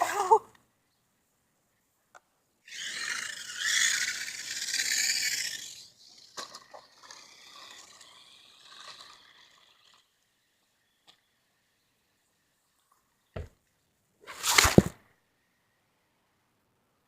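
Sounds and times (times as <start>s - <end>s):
toy car motor whining: 2.7s - 11.0s.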